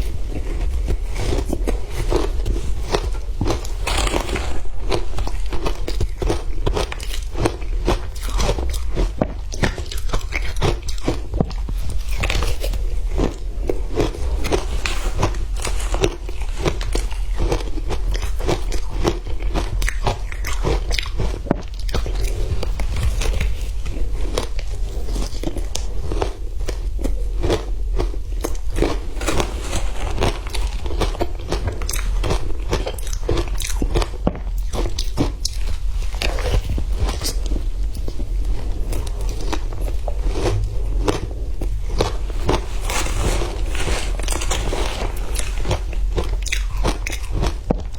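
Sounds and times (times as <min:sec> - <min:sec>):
ice being crunched and chewed: 0:00.0 - 0:47.9
steady low hum: 0:21.3 - 0:47.9.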